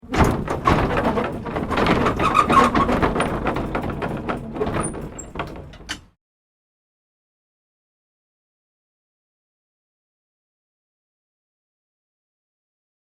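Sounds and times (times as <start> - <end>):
wooden cart creaking: 0.0 - 6.2
wooden cart rattling and clunking: 0.0 - 6.2.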